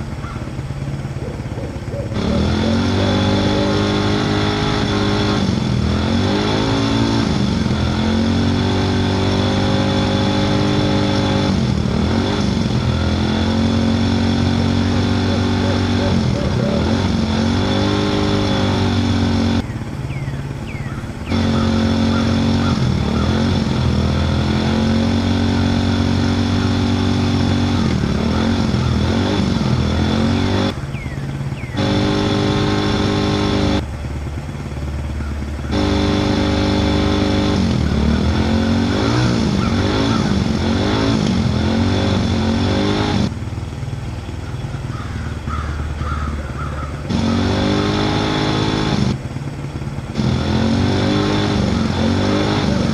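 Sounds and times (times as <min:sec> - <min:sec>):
vehicle engine revving: 0:00.0 - 0:52.9.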